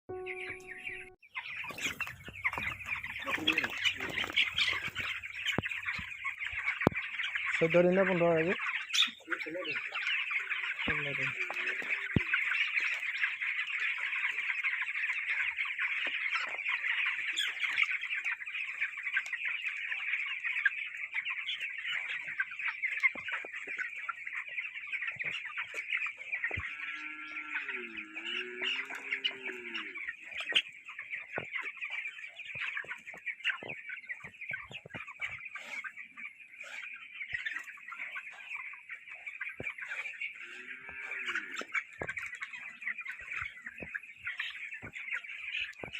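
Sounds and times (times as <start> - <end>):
lower wavering call: 0.1 - 1.2
chicks peeping: 0.1 - 45.9.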